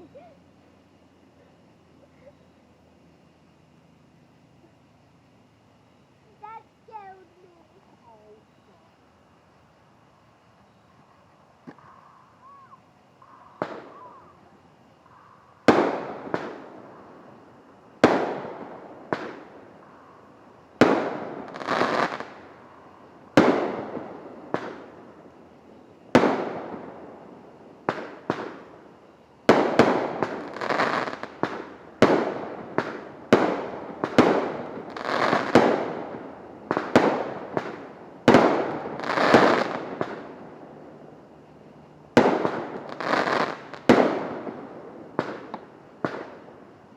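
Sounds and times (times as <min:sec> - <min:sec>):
fireworks banging: 0:13.4 - 0:14.3, 0:15.0 - 0:17.2, 0:18.0 - 0:20.2, 0:20.8 - 0:25.4, 0:26.1 - 0:40.9, 0:42.1 - 0:46.7.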